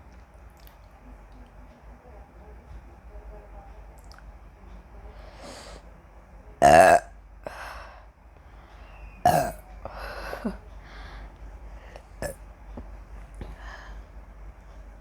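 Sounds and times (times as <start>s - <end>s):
woman burping: 6.6s - 7.1s, 9.2s - 9.6s.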